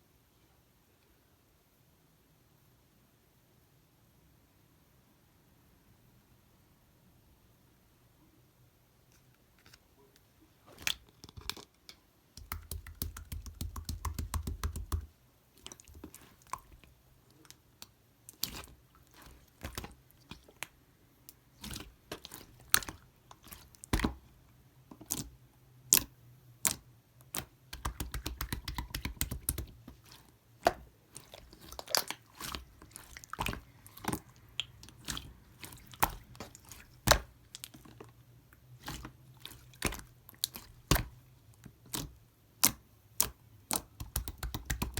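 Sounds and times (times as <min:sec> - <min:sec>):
hands squishing slime: 0:12.4 - 0:44.9.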